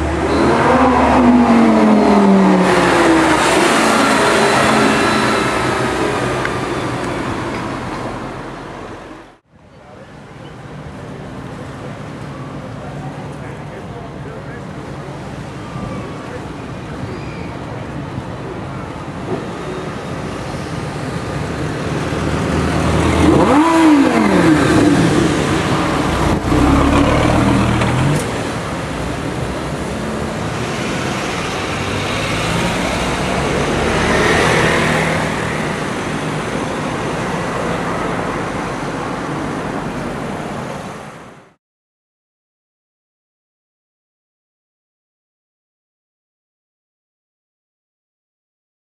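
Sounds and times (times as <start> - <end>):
street traffic noise: 0.0 - 41.6
sports car engine accelerating: 22.1 - 28.5.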